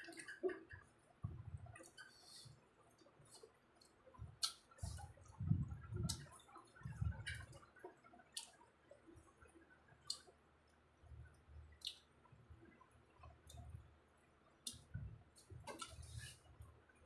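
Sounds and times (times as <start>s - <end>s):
mouth clicks and smacks: 3.8s - 5.1s, 11.7s - 12.1s.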